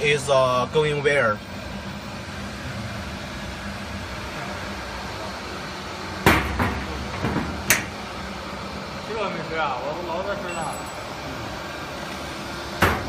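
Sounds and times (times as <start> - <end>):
workshop hum: 0.0 - 13.0
metal cabinet door knocking shut: 6.2 - 7.8, 12.8 - 13.0.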